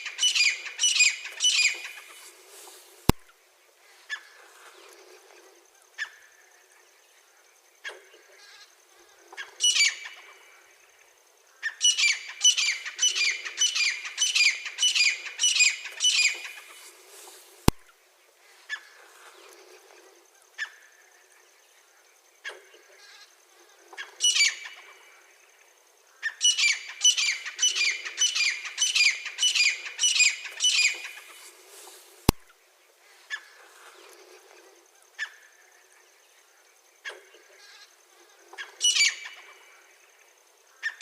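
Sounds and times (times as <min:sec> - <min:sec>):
bird calling harshly: 0:00.0 - 0:02.8, 0:11.6 - 0:17.5, 0:26.2 - 0:32.3
sharp click: 0:17.6 - 0:17.8.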